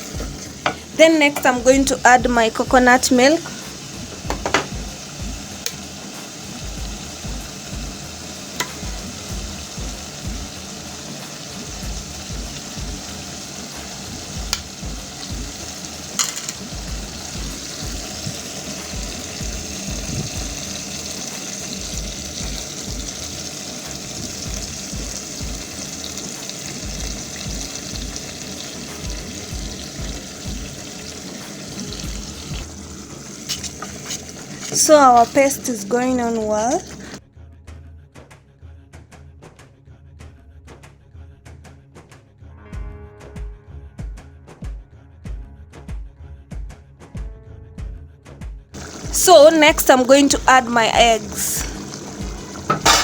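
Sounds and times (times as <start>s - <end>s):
paste sizzling in a pan: 0.0s - 37.2s, 48.8s - 53.0s.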